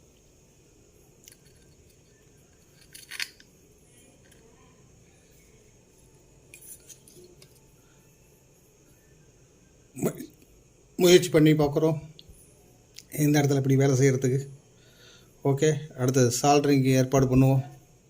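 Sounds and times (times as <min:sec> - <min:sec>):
small hard parts clicking and clinking: 0:01.2 - 0:04.6.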